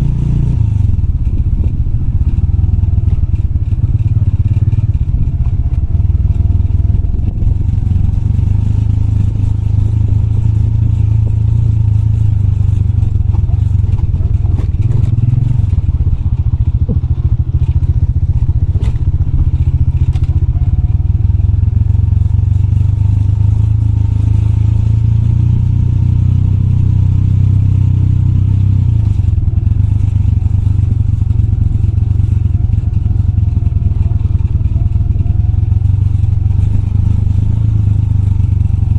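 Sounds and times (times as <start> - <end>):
motorbike engine running: 0.0 - 38.9
motorbike knocks and rattles: 1.1 - 21.4.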